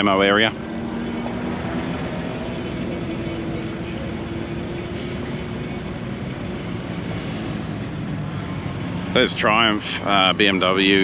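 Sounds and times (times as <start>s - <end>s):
vehicle engines humming: 0.0s - 11.0s.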